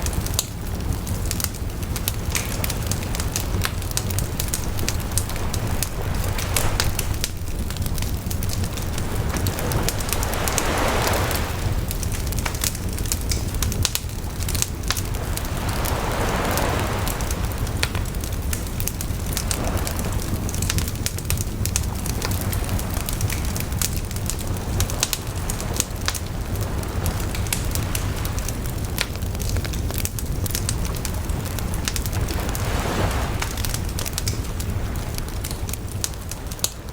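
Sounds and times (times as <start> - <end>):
campfire crackling and popping: 0.0 - 36.9
waves washing on shore: 0.0 - 36.9
low rumble: 1.9 - 23.0.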